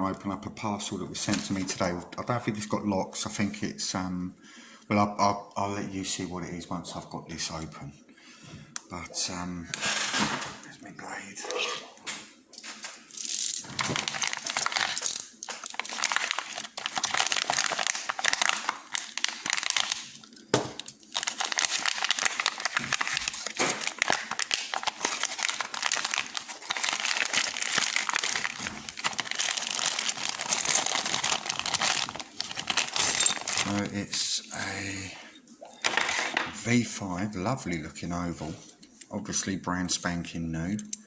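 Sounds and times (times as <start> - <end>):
plastic packaging crinkling: 13.4 - 34.2.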